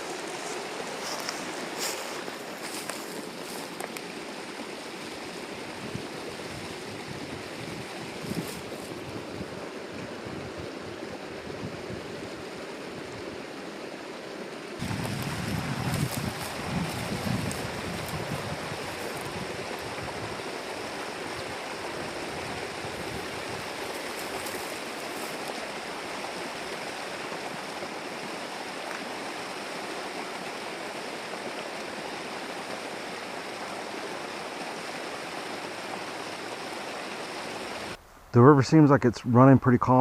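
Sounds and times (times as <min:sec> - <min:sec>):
river rushing over rocks: 0:00.0 - 0:38.0.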